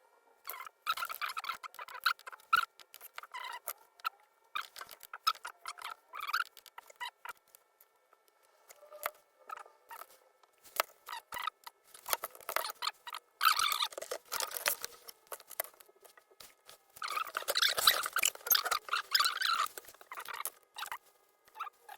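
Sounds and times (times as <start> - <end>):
scratching and rustling: 8.3 - 21.9.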